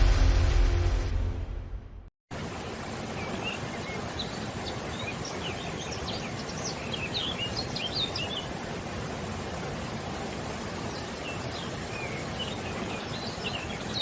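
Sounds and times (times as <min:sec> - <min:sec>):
small birds chirping: 0:03.1 - 0:08.7, 0:10.8 - 0:14.0.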